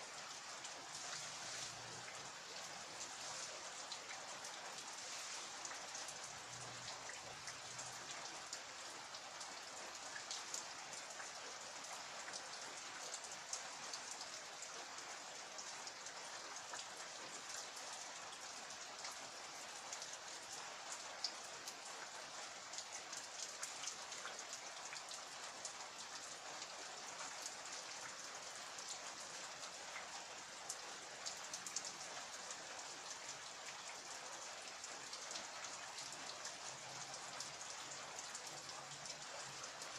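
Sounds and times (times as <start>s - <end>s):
rain hissing: 0.1s - 7.0s
raindrops tapping on surfaces: 0.1s - 39.9s.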